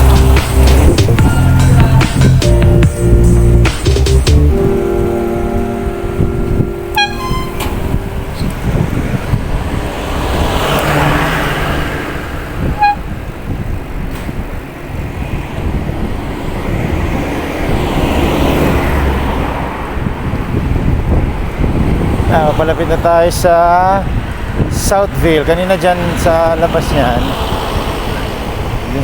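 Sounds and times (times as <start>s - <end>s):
road traffic rumble: 0.0s - 29.0s
vehicles passing: 0.0s - 29.0s
brief high chirp: 6.9s - 8.7s.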